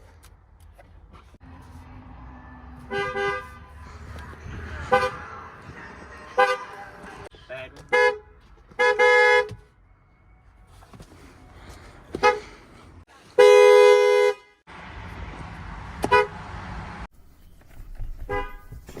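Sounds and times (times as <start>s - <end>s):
car horns honking: 2.0s - 9.8s, 12.1s - 12.6s, 13.3s - 14.7s, 16.0s - 16.6s, 18.3s - 19.0s.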